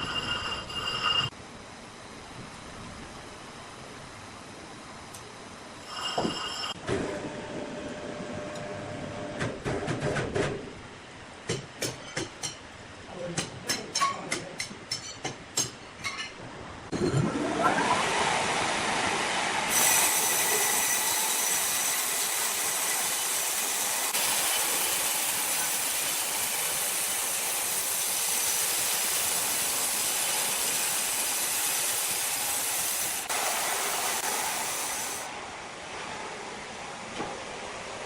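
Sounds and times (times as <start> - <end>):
saw cutting through log: 19.7 - 35.3.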